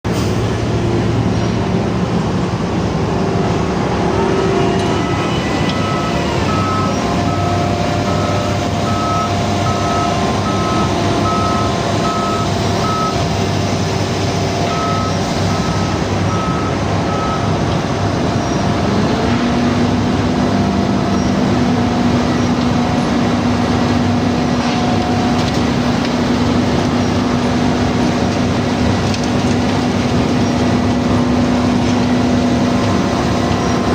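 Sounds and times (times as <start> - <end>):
heavy machinery running: 0.0 - 33.9
reversing alarm beeping: 4.9 - 13.3, 14.6 - 17.6.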